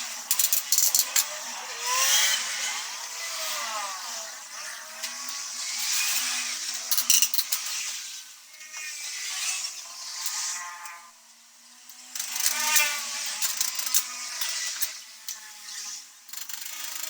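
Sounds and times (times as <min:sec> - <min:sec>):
small machine motor whirring: 0:00.0 - 0:17.0.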